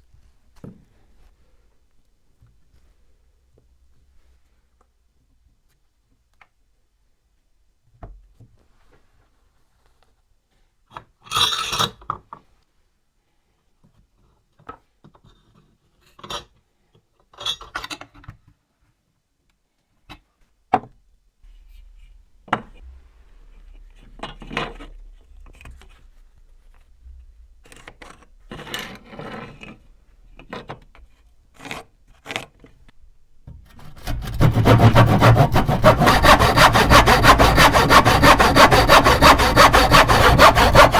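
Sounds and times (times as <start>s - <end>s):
loud continuous rasping: 33.6s - 40.9s
hand tools scraping: 33.7s - 40.9s.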